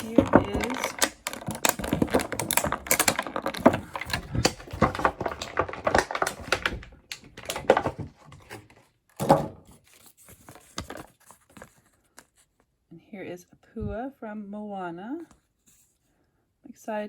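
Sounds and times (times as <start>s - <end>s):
plastic packaging clicking: 0.0s - 9.5s.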